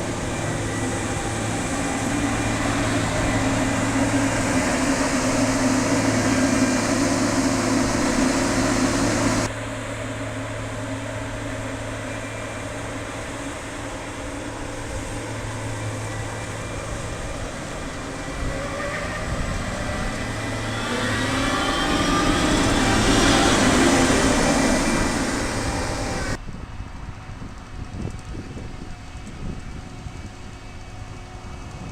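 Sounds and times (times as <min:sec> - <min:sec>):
machinery whines: 0:00.0 - 0:26.4
farm machinery engines droning: 0:00.0 - 0:31.9.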